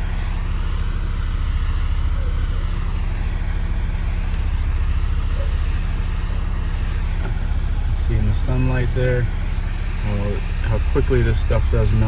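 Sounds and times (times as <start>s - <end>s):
torch flame burning: 0.0s - 12.0s.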